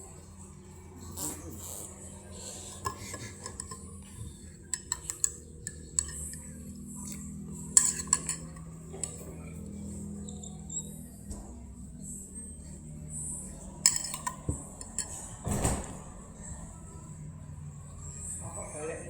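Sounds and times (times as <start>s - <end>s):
cutlery and dishes clinking: 2.8s - 4.0s, 4.6s - 9.6s, 13.8s - 15.9s.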